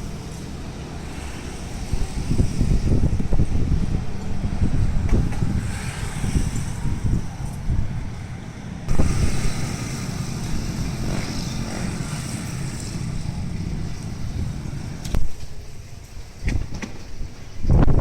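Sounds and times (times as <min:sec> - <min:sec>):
storm wind gusting: 0:00.0 - 0:18.0
wind buffeting microphone: 0:00.0 - 0:18.0.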